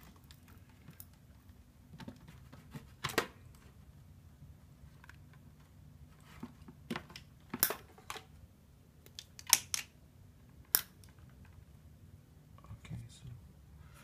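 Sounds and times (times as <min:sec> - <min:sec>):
sharp plastic clicks: 0:09.0 - 0:09.9.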